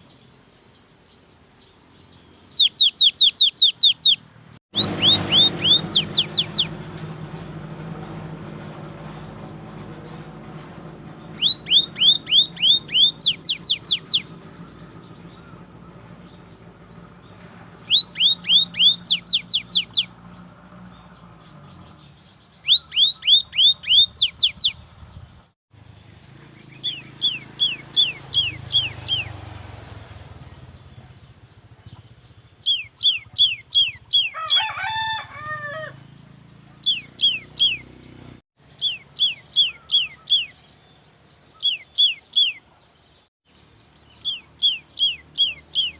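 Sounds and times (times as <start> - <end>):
bird singing whistled notes: 0.0 - 6.8, 11.2 - 16.6, 17.8 - 20.2, 21.8 - 25.4, 26.6 - 29.4, 32.3 - 34.4, 36.8 - 38.0, 38.7 - 42.7, 43.5 - 45.9
wavering lower bird call: 2.6 - 4.2, 4.8 - 6.7, 11.4 - 14.3, 17.9 - 20.1, 22.6 - 24.8, 32.6 - 36.0, 38.8 - 40.6, 41.5 - 42.6, 44.2 - 45.9.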